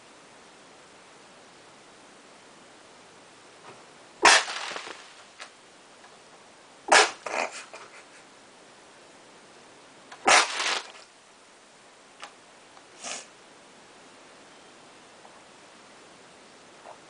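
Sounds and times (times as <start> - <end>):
man sneezing through nose: 6.9 - 7.7, 13.0 - 13.3.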